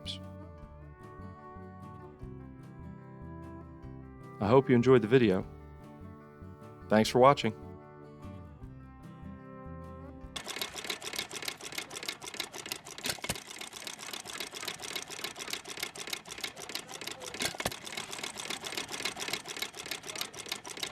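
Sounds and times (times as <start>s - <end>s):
acoustic guitar music: 0.0s - 10.7s
rapid mechanical clicking and rattling: 10.4s - 20.9s.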